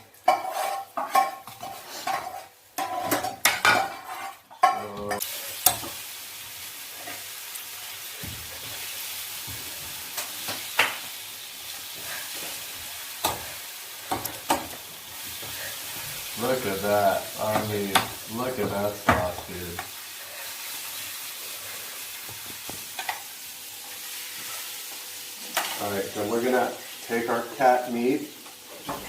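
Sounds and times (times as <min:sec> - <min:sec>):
food sizzling in a skillet: 0:00.0 - 0:29.0
utensil scraping a pan: 0:00.2 - 0:04.8.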